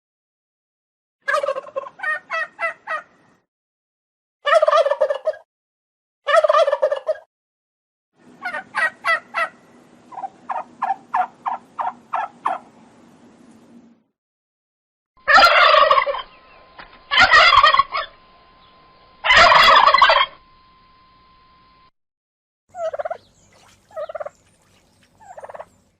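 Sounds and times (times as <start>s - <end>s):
turkeys gobbling: 1.3s - 3.1s, 4.5s - 5.4s, 6.3s - 7.3s, 8.4s - 12.7s, 15.2s - 18.2s, 19.2s - 20.4s, 22.7s - 25.8s.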